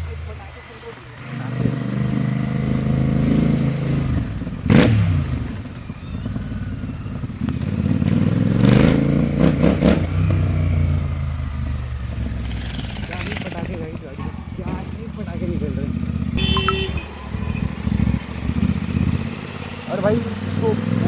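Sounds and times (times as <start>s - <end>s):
motorcycle engine revving: 0.0s - 21.0s
exhaust crackles and pops: 4.4s - 8.6s.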